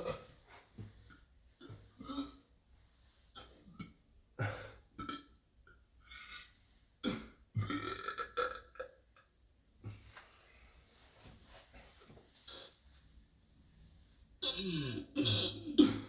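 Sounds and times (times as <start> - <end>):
person burping: 2.0 - 2.4, 3.7 - 5.4, 7.0 - 9.0, 14.4 - 16.0.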